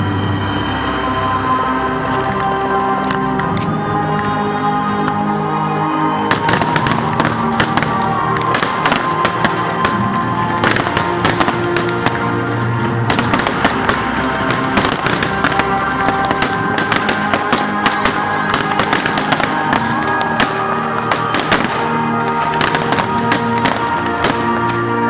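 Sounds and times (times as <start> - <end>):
loud music with held tones: 0.0 - 25.0
fireworks bangs and crackles: 6.2 - 25.0.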